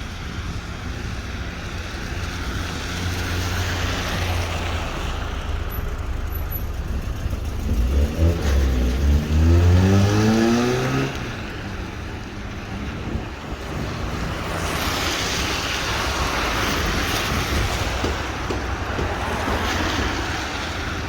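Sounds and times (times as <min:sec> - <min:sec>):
car engine accelerating: 0:02.2 - 0:12.0.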